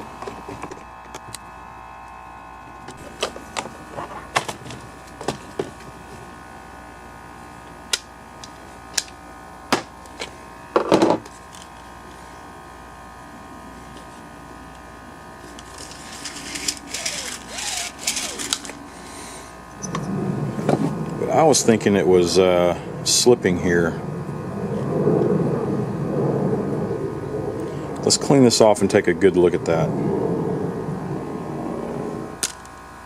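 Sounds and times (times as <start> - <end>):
background hum: 0.0 - 33.0
short rattle: 15.5 - 18.8.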